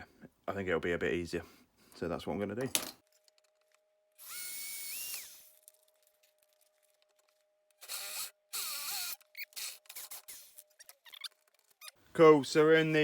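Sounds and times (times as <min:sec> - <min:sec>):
power drill whining: 0:04.2 - 0:05.7, 0:07.8 - 0:11.8.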